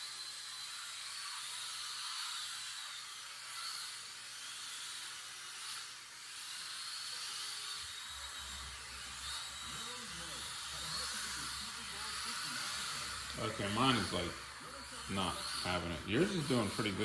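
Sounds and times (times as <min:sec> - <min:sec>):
high electric motor whine: 0:00.0 - 0:17.0
tyres hissing on track: 0:09.1 - 0:17.0.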